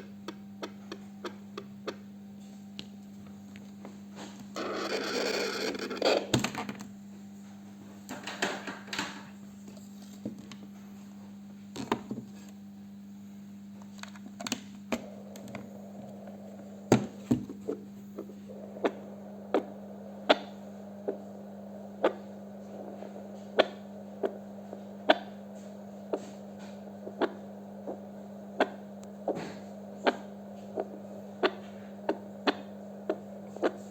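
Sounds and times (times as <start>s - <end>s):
steady hum: 0.0s - 33.9s
whooshing fetal heartbeat: 14.8s - 33.9s
probe scraping and rubbing: 15.0s - 33.9s.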